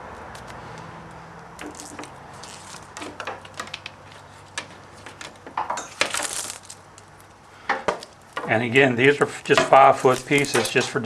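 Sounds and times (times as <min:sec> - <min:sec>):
wire rustling: 0:00.0 - 0:11.0.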